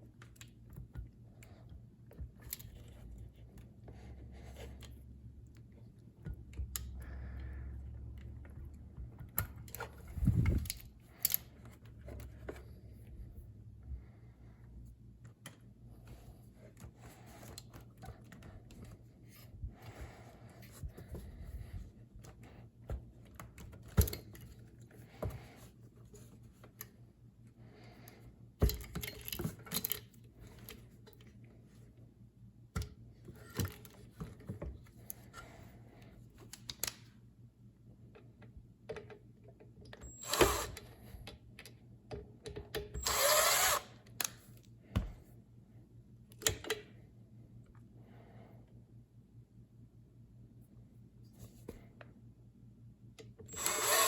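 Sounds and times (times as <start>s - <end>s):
steady low hum: 0.0s - 54.0s
power drill burst: 40.1s - 40.8s, 43.0s - 43.9s, 53.5s - 54.0s.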